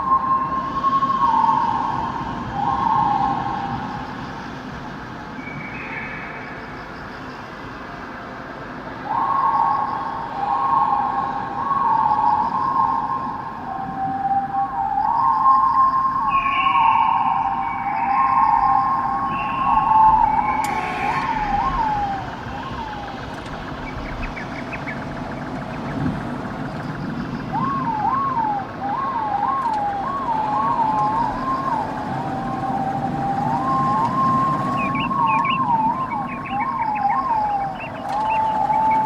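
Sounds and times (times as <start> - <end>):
warbling siren-like tone: 9.0 - 39.0.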